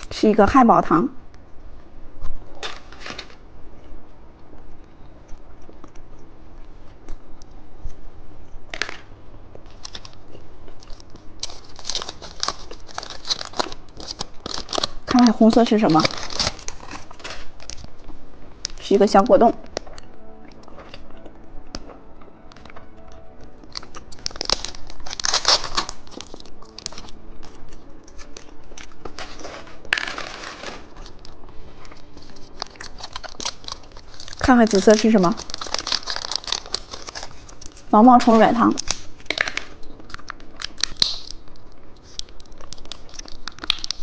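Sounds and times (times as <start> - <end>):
packaging crinkling and tearing: 2.2 - 3.4, 8.8 - 18.9, 22.6 - 44.0.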